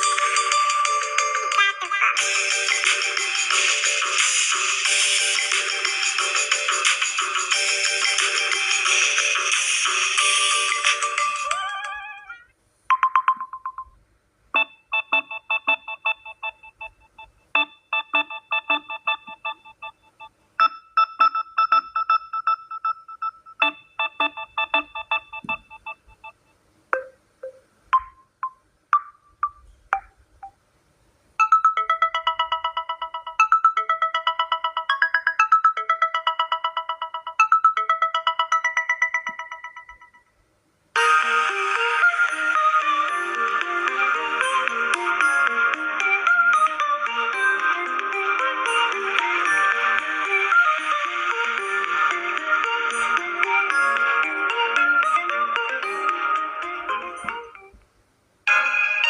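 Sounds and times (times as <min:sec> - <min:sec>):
phone ringtones: 0:12.9 - 0:14.0, 0:14.6 - 0:26.4, 0:31.4 - 0:40.3.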